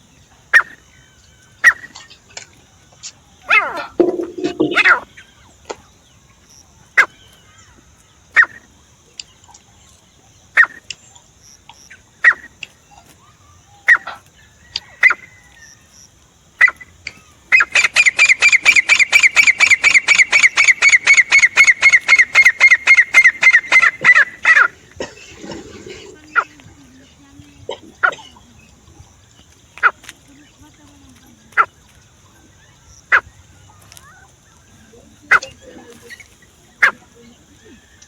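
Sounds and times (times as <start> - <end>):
francolin calling: 3.5 - 5.4, 16.6 - 38.0.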